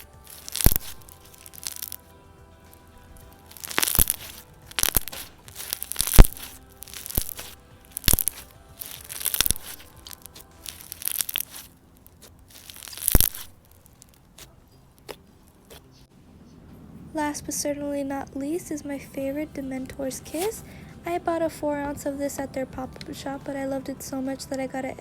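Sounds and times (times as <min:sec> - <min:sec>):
slime squishing with bubble pops: 0:00.0 - 0:02.0, 0:03.5 - 0:15.9.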